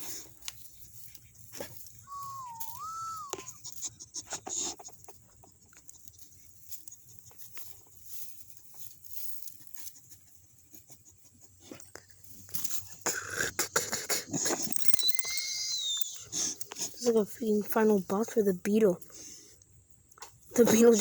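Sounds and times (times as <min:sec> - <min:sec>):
light clicks and rustles: 0:00.0 - 0:02.1, 0:03.4 - 0:13.0
thin wavering whistle-like tone: 0:02.0 - 0:03.6, 0:14.8 - 0:16.3.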